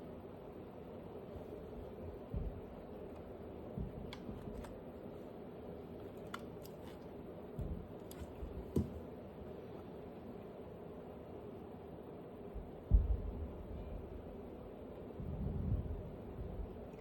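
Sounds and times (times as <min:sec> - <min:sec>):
steady low hum: 0:00.0 - 0:17.0
soft thumps of handled objects: 0:02.0 - 0:04.8, 0:06.8 - 0:09.1.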